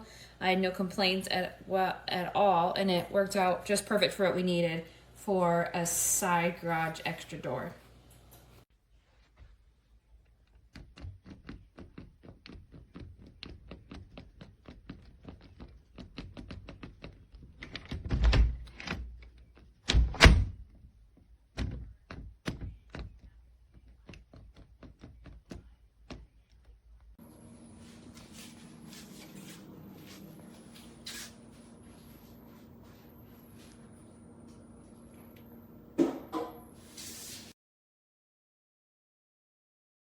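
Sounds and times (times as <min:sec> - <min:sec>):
heavy door thuds: 0:19.9 - 0:20.7.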